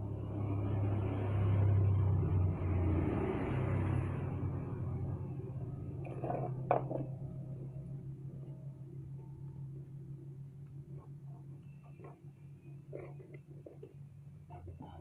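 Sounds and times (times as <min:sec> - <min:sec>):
vehicle engine idling: 0:04.0 - 0:15.0.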